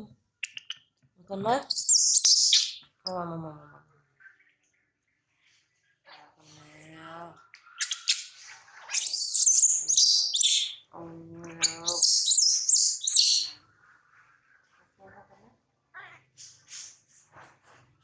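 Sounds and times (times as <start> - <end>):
monkey squealing: 9.0 - 10.8, 11.8 - 13.5.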